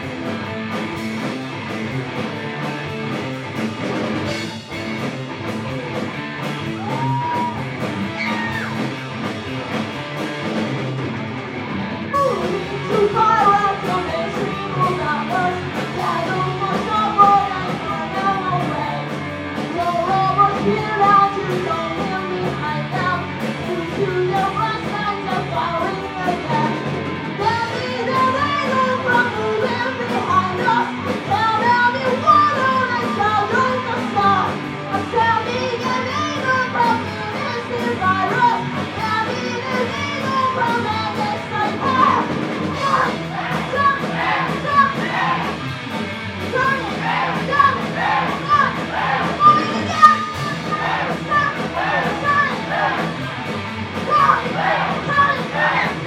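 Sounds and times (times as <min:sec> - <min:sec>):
live rock band playing: 0:00.0 - 0:56.0
person singing: 0:12.2 - 0:19.1, 0:19.8 - 0:45.6, 0:46.5 - 0:53.2, 0:54.0 - 0:56.0.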